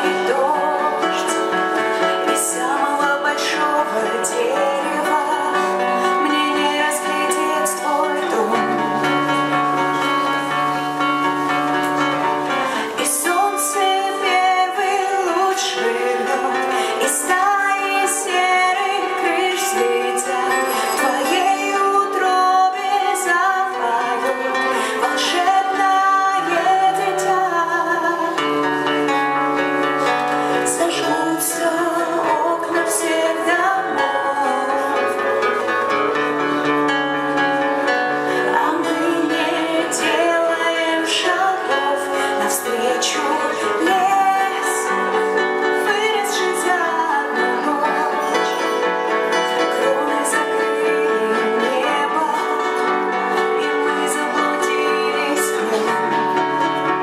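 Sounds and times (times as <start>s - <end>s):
guitar: 0.0s - 57.0s
person singing: 0.0s - 57.0s.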